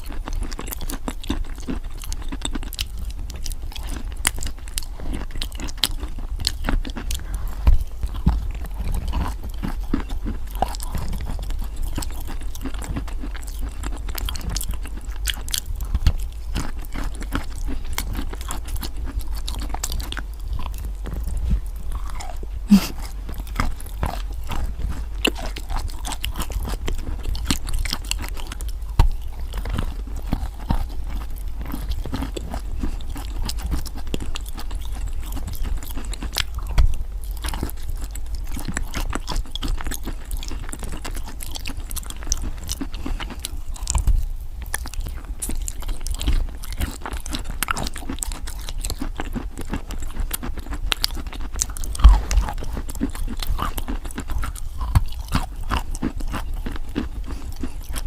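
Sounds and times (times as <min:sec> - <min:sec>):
chalk being chewed crunching: 0:00.0 - 0:58.0.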